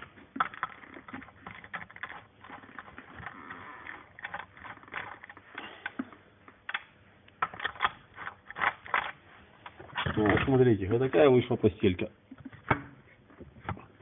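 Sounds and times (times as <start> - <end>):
metal parts clicking and knocking: 0.0 - 6.0, 6.7 - 10.6.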